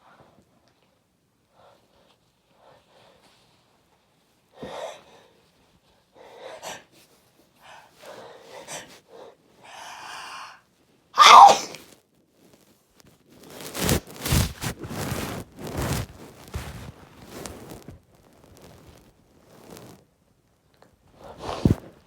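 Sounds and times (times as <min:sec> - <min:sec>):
person gasping: 0:09.6 - 0:10.6, 0:11.2 - 0:11.8
loud sneeze: 0:11.2 - 0:11.9.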